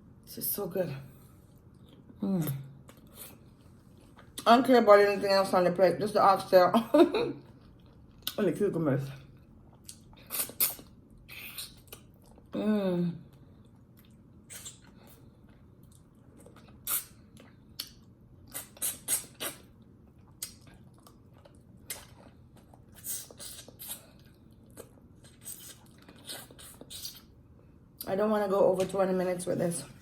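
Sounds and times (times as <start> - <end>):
chewing and lip-smacking: 2.8 - 4.5, 9.3 - 12.6, 13.5 - 27.4.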